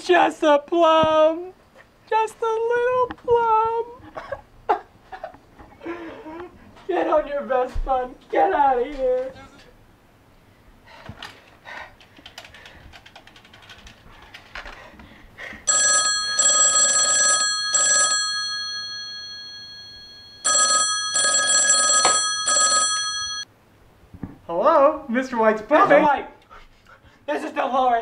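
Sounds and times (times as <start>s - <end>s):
telephone ringtone: 15.7s - 23.5s.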